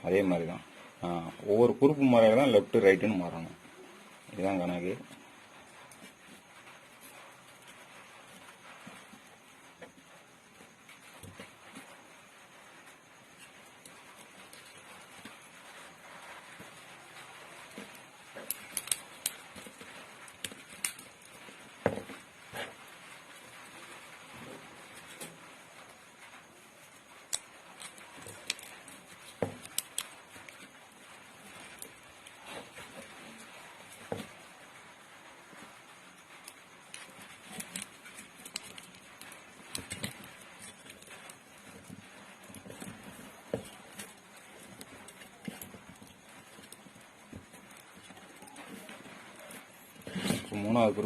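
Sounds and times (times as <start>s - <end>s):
faint hiss: 0.0s - 51.0s
light clicks and taps of wire: 17.8s - 21.4s, 36.4s - 50.9s.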